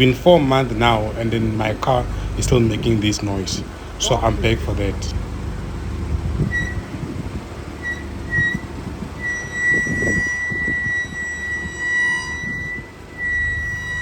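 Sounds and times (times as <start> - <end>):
low road rumble: 0.0 - 14.0
car brakes squealing: 6.5 - 7.0, 7.8 - 14.0.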